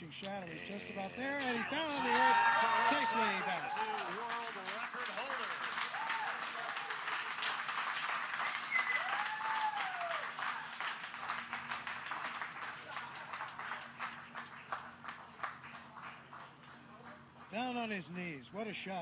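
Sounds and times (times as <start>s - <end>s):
crowd applauding and cheering: 1.2s - 17.3s
whoops: 1.9s - 4.1s, 5.9s - 7.0s, 8.6s - 10.7s.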